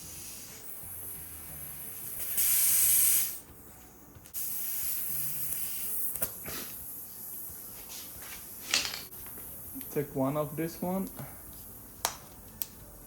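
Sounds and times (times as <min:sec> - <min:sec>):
air hissing from tire puncture: 0:00.0 - 0:03.6, 0:04.3 - 0:09.8.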